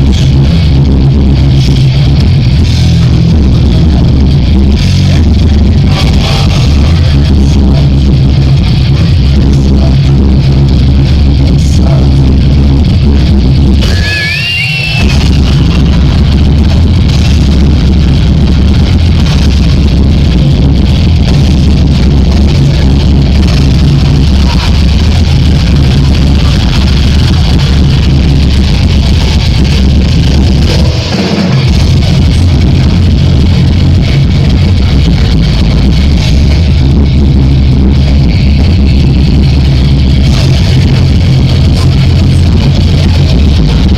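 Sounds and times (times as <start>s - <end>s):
live heavy metal band: 0.0s - 43.9s
short whistle-like tone: 13.8s - 15.4s.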